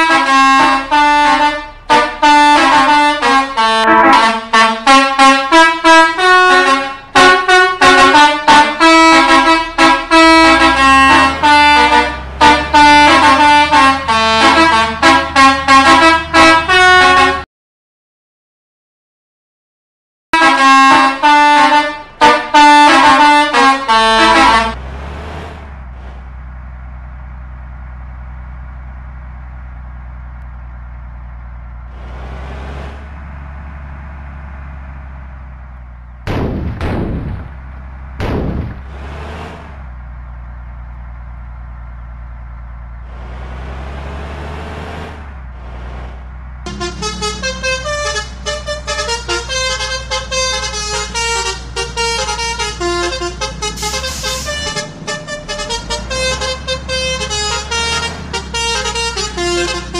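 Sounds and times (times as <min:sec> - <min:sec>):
bus engine running: 0:00.0 - 0:17.4, 0:20.4 - 0:59.9
bus horn playing a tune: 0:00.0 - 0:17.5, 0:20.4 - 0:24.8, 0:46.6 - 0:59.9
loud engine bursts: 0:46.6 - 0:59.9.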